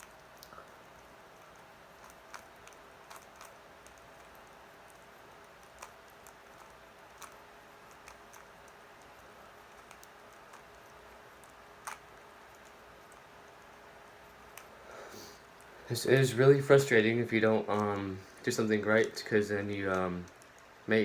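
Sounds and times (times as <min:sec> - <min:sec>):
faint steady hiss: 0:00.0 - 0:21.0
plastic puzzle cube clicking: 0:02.0 - 0:13.2.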